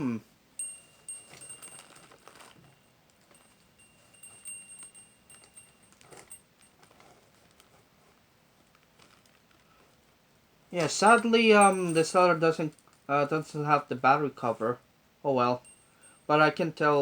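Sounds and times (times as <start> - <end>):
small metal bells tinkling: 0.0 - 7.2, 10.7 - 13.8, 15.4 - 17.0.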